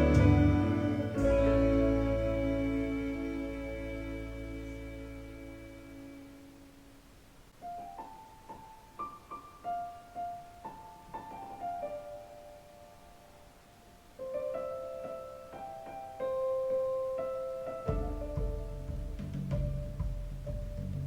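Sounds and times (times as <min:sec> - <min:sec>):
jazz piano over loudspeakers: 0:00.0 - 0:07.0, 0:07.6 - 0:21.0.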